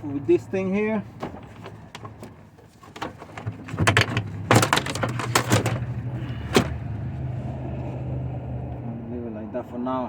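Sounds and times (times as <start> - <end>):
plastic panel knocking and clattering: 1.2 - 6.7.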